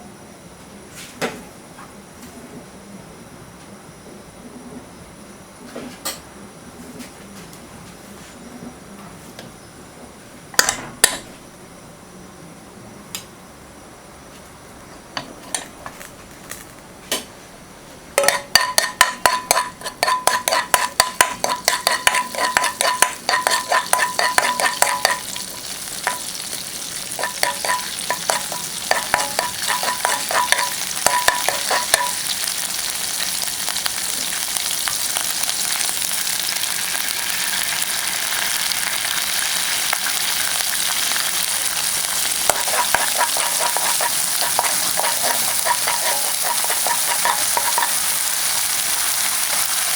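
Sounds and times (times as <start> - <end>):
metal utensil scraping a pan: 18.2 - 32.9, 42.1 - 49.8
vegetables sizzling in a pan: 18.2 - 49.9.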